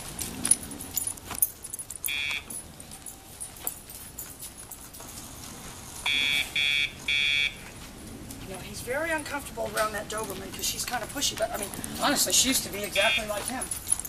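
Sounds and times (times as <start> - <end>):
light metallic jingling: 0.0 - 5.6, 9.1 - 14.0.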